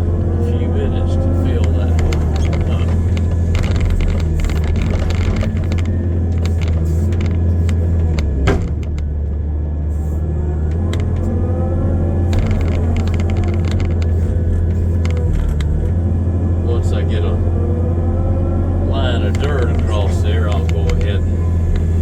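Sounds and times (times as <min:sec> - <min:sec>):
excavator diesel engine running: 0:00.0 - 0:22.0
hydraulics whining: 0:00.0 - 0:22.0
machine clicks and clanks: 0:01.5 - 0:09.2, 0:12.3 - 0:16.0.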